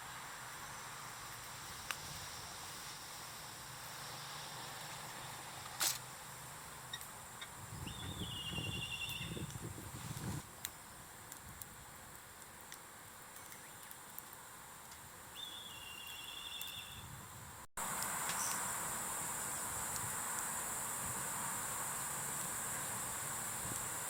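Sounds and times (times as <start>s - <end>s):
short trilling call: 15.4s - 17.0s
high insect drone: 17.8s - 24.0s.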